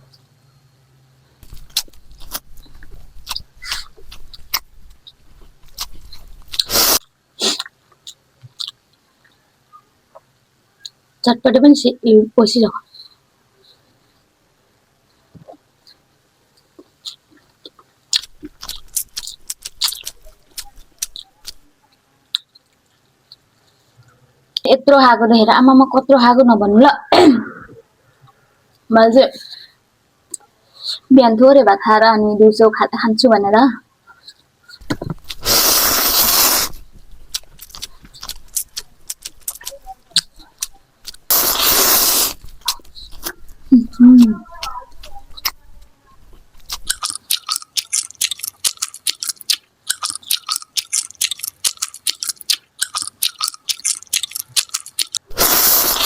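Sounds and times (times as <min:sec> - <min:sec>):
person chewing food: 0:01.4 - 0:09.0, 0:16.6 - 0:21.7, 0:34.8 - 0:43.6, 0:46.3 - 0:56.0
slurping noodles: 0:06.6 - 0:07.7, 0:35.3 - 0:36.8, 0:41.3 - 0:42.4, 0:52.9 - 0:56.0
mouth and utensil clicks: 0:46.7 - 0:56.0.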